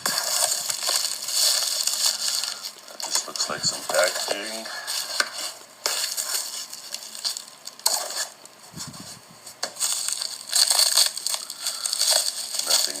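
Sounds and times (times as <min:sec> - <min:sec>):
packing material rustling: 0:00.0 - 0:13.0.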